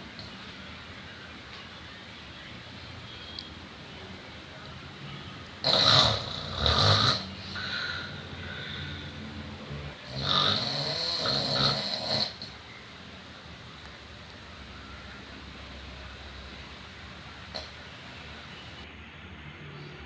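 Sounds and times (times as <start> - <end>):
person snoring loudly: 5.6 - 12.6.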